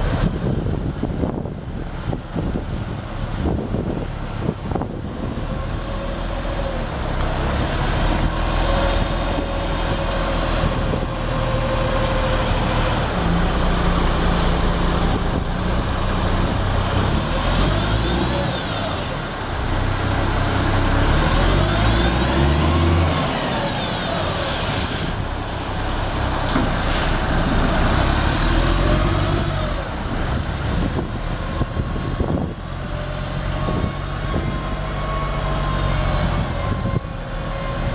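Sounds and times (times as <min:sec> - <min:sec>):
diesel truck engine running: 0:00.0 - 0:37.9
air hisses: 0:26.6 - 0:27.3.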